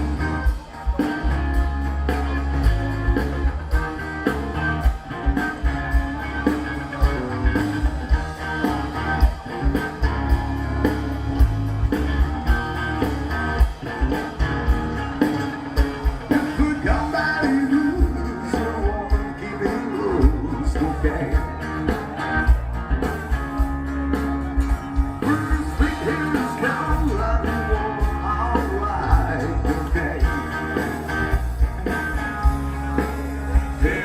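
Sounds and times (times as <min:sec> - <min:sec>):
rock and roll song: 0:00.0 - 0:34.0
person singing: 0:16.1 - 0:22.3, 0:25.0 - 0:31.2, 0:33.5 - 0:34.0.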